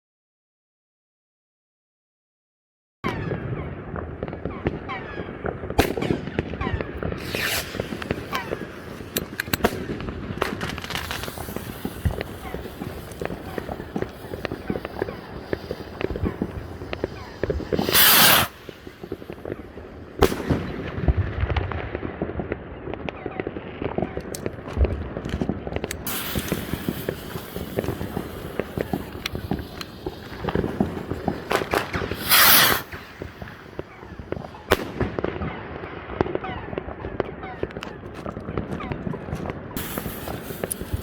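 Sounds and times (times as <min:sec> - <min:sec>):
firework bang: 0:04.2 - 0:22.0, 0:24.1 - 0:35.6
firework rockets launching: 0:04.4 - 0:22.0, 0:23.9 - 0:41.0
firework crackling: 0:05.7 - 0:21.6, 0:24.0 - 0:35.4, 0:36.6 - 0:41.0.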